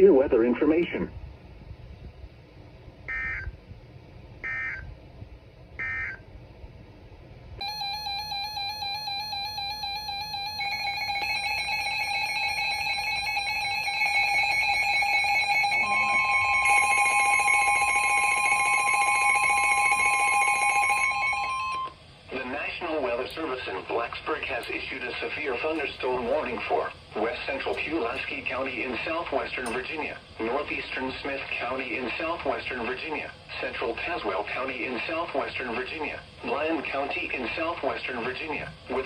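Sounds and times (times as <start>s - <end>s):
warbling electronic alert tones: 3.1s - 3.5s, 5.8s - 6.2s, 7.6s - 21.9s
steady single alarm tone: 4.4s - 4.9s, 5.8s - 6.2s, 7.6s - 22.0s
digital data tone bursts: 5.8s - 6.2s, 7.6s - 21.9s.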